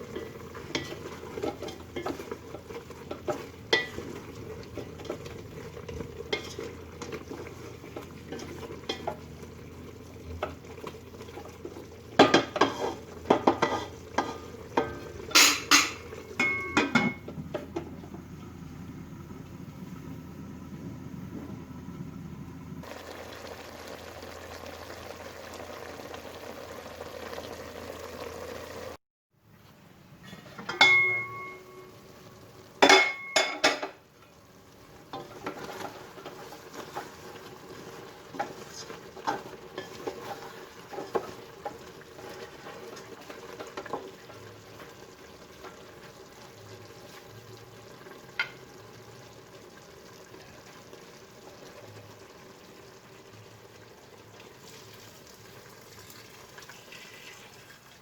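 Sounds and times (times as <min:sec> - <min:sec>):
food sizzling: 0:00.0 - 0:18.8, 0:22.8 - 0:29.0, 0:30.4 - 0:58.0
metal utensil clanging on pot: 0:00.1 - 0:04.2, 0:06.2 - 0:07.2, 0:12.2 - 0:17.8, 0:30.3 - 0:31.8, 0:32.8 - 0:34.0.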